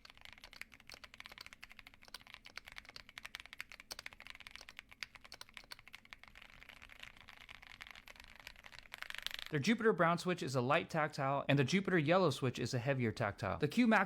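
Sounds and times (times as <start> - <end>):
mechanical keyboard typing: 0.0 - 9.6.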